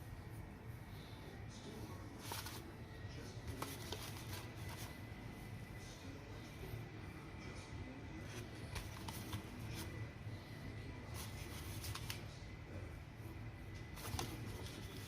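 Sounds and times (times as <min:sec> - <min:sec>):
low steady hum: 0:00.0 - 0:15.0
soft rustling: 0:02.0 - 0:05.6.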